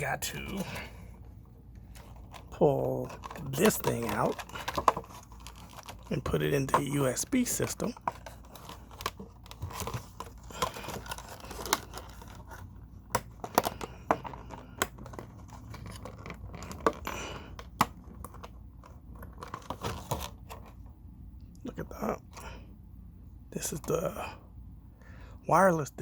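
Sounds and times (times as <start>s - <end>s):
plastic scraping: 1.8s - 20.8s.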